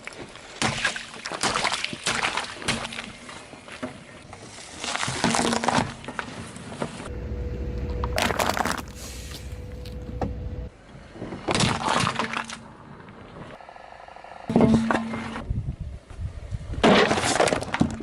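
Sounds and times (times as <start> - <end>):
car tyre crushing brittle objects: 4.7 - 6.8, 7.8 - 10.1
low car rumble: 7.1 - 11.1.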